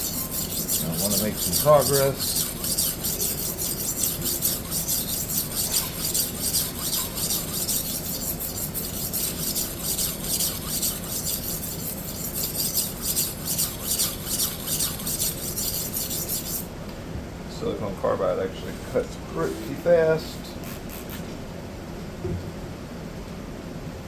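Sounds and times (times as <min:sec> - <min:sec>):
knife grinding on sharpening stone: 0:00.0 - 0:16.7.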